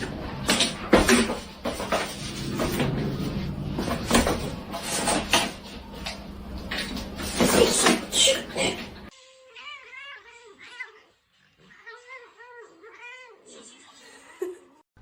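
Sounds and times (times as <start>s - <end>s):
knocks and clatters: 0.0s - 8.2s
steady low hum: 0.0s - 9.1s.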